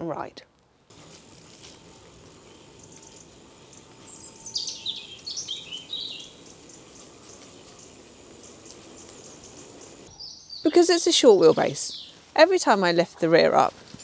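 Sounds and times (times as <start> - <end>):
background hiss: 0.5 - 14.0
small bird chirping: 1.8 - 12.2.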